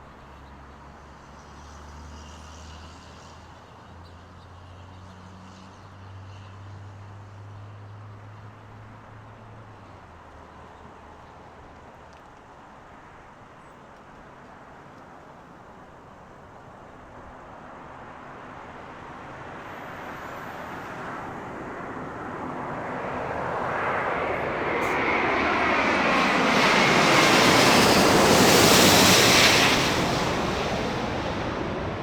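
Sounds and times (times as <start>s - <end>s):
jet airliner passing overhead: 17.1s - 32.0s.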